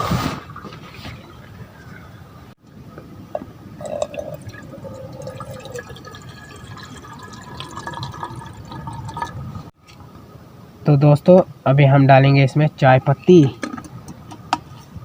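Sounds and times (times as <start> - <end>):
water trickling and dripping: 3.8 - 9.7.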